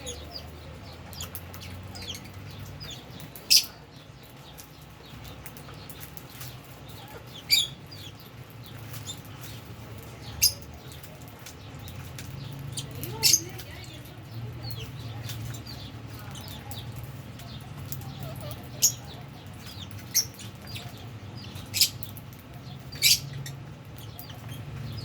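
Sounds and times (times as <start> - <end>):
soft bird chirps: 0.0 - 25.0.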